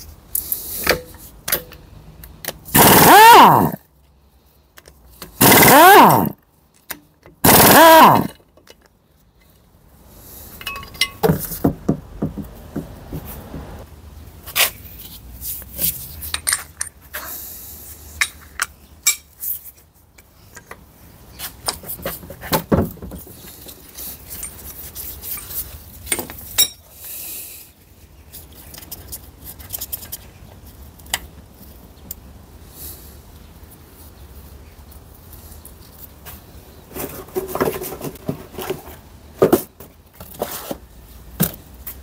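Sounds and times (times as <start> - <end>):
metal parts clinking and knocking: 15.8 - 17.0, 24.3 - 26.8.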